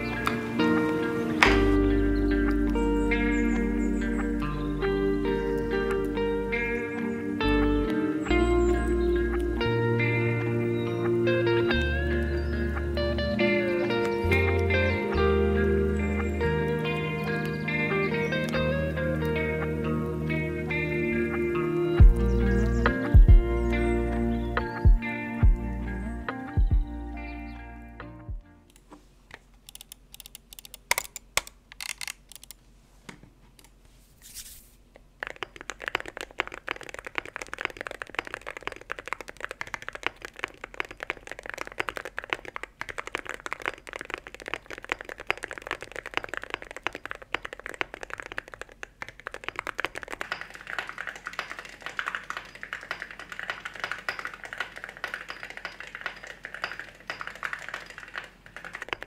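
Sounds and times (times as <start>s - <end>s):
typing on mechanical keyboard: 35.2s - 59.0s.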